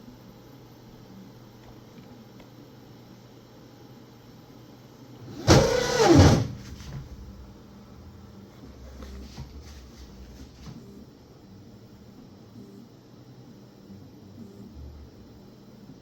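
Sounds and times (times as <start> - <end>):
stepper motor buzz: 5.3 - 7.4.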